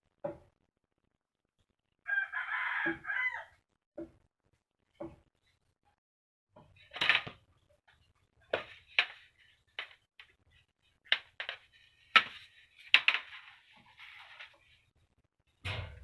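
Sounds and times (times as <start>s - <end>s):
rough scraping rustle: 13.3s - 14.8s.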